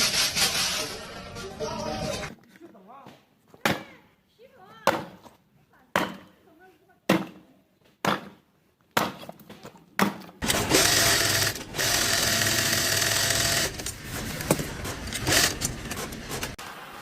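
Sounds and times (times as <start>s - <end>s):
small motorised tool running: 10.4s - 16.6s.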